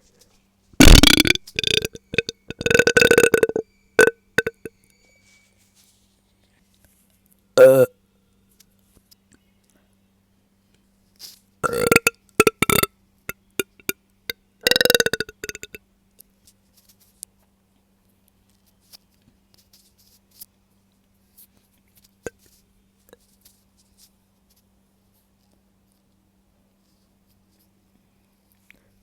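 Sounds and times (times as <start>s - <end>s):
woman burping loudly: 0.8s - 4.7s, 7.6s - 7.9s, 11.6s - 12.9s, 14.7s - 15.8s.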